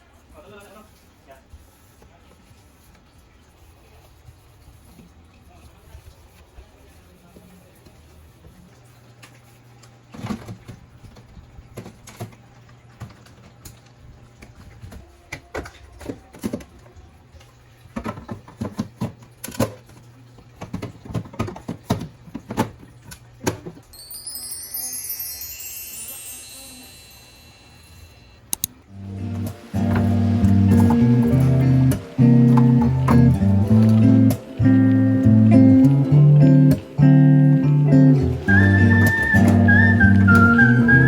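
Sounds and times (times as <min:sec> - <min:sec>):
shimmering high chime tones: 0:23.9 - 0:28.5
low steady hum: 0:26.4 - 0:39.0.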